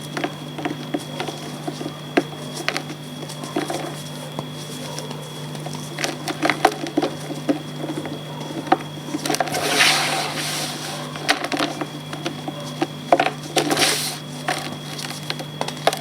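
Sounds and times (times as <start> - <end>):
chalk cracking and crunching: 9.1 - 16.0.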